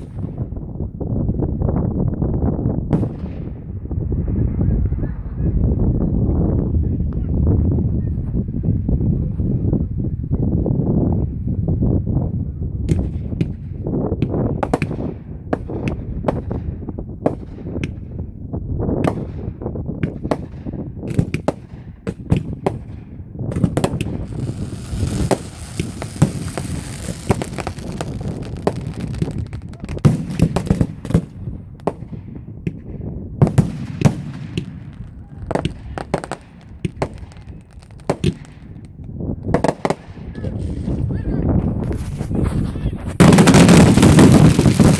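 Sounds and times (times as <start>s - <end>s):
fireworks cracks and bangs: 19.0s - 40.8s, 41.8s - 44.9s.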